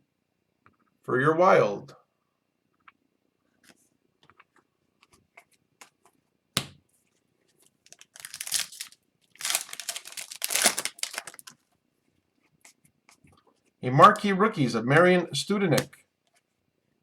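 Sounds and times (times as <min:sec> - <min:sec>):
wrapper tearing and crinkling: 0:07.8 - 0:11.6.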